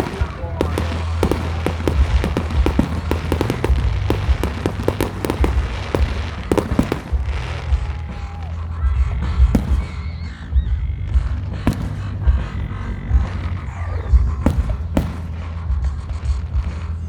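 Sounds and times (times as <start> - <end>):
fireworks crackling and popping: 0.0 - 17.0.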